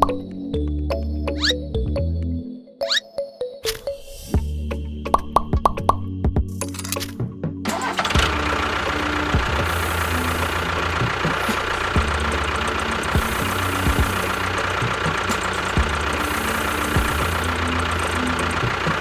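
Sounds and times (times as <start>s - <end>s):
engine knocking and chugging: 0.0s - 0.2s, 7.6s - 19.0s.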